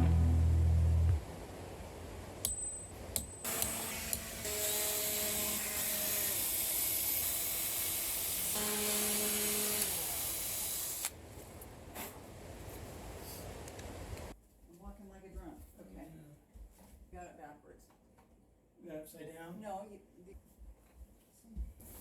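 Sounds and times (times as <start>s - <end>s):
power tool hissing: 3.5s - 11.2s.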